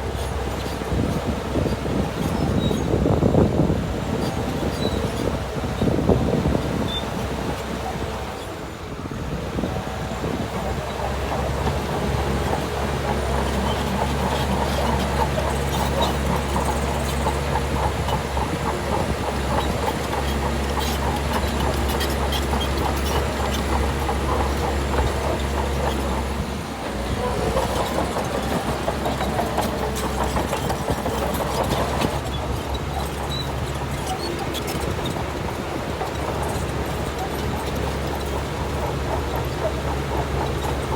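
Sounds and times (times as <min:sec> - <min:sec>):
bulldozer diesel engine under load: 0:00.0 - 0:40.9
steel tracks clattering: 0:09.6 - 0:40.9.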